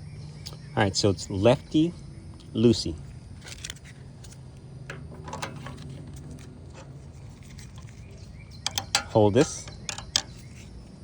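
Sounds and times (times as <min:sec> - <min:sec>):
steady low hum: 0:00.0 - 0:11.0
faint clicks and scraping: 0:03.4 - 0:10.8.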